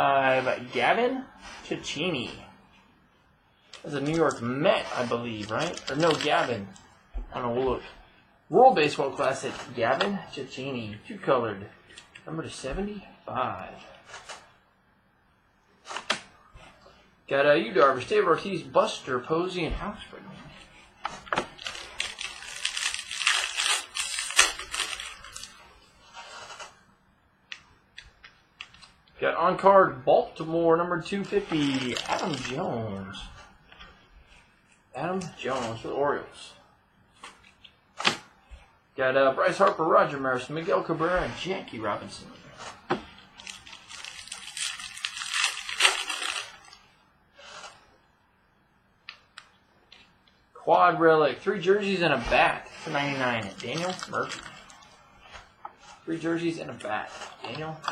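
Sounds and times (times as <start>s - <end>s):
cards scraping and rustling: 3.7s - 6.8s, 13.8s - 14.6s, 15.8s - 16.3s, 20.3s - 26.8s, 31.0s - 34.5s, 47.4s - 47.9s, 51.6s - 57.9s
trading cards being handled: 3.7s - 6.9s, 51.6s - 57.9s.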